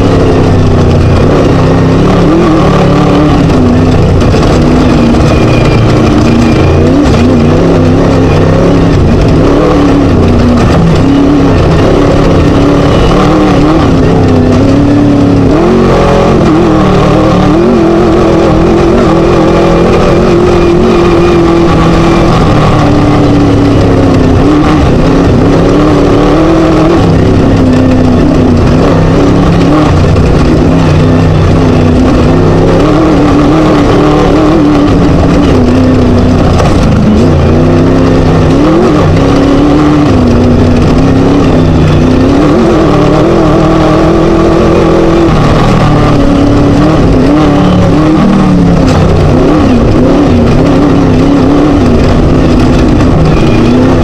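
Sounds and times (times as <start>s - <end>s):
buggy engine revving hard: 0.0s - 54.0s
rough terrain noise: 0.0s - 54.0s.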